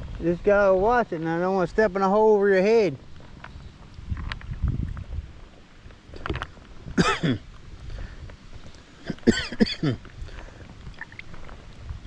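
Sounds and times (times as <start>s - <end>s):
wind rumbling on microphone: 0.0s - 12.0s
water splashing around wading legs: 10.8s - 11.9s.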